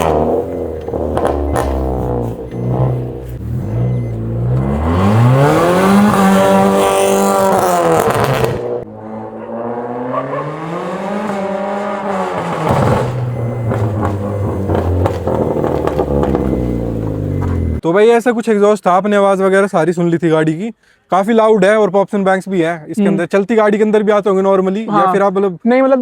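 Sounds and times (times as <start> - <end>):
car engine revving: 0.0 - 17.8
exhaust crackles: 0.0 - 17.8.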